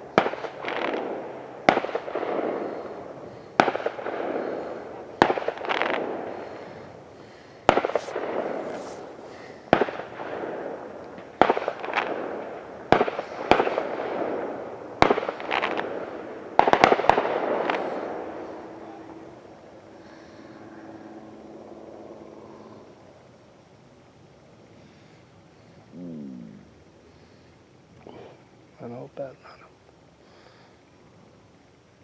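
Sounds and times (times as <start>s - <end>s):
fireworks bangs with echo: 16.6s - 18.2s.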